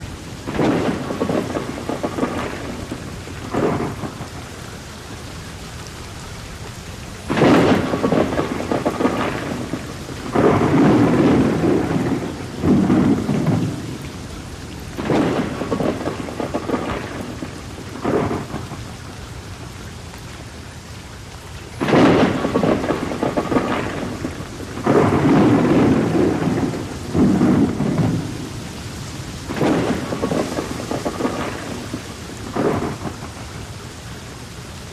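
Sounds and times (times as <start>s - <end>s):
steady rain falling: 0.0s - 34.9s
thunder rolling: 0.4s - 4.5s, 7.2s - 19.1s, 21.8s - 33.6s.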